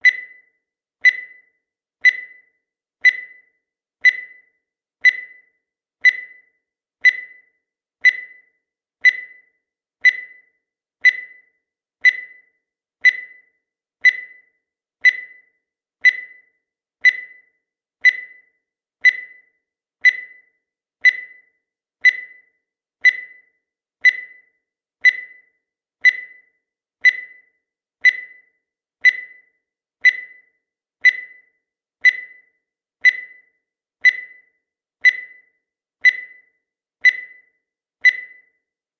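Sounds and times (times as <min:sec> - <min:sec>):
sharp ringing timer tick: 0:00.0 - 0:38.7.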